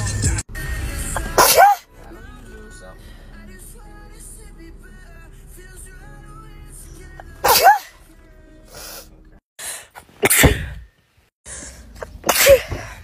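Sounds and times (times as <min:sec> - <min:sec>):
person sneezing: 0:01.2 - 0:01.9, 0:07.4 - 0:07.9, 0:12.2 - 0:13.0.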